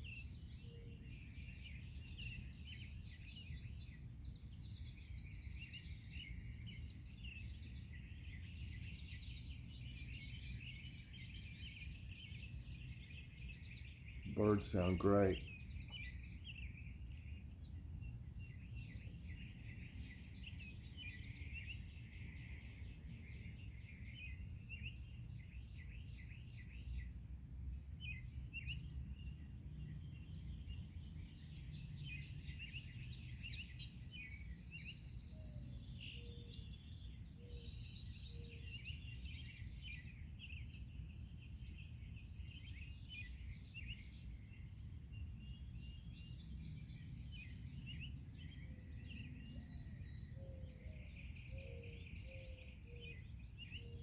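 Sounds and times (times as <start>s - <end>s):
songbirds chirping and trilling: 0.0s - 54.0s
high rapid bird call: 14.3s - 15.5s.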